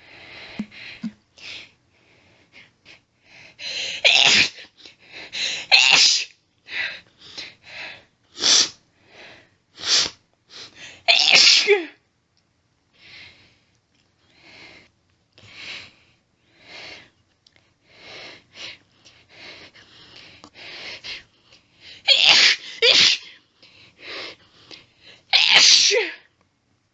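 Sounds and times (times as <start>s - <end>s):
woman sneezing: 4.1s - 4.6s, 5.8s - 6.3s, 11.1s - 12.0s, 22.1s - 23.3s, 25.4s - 26.2s.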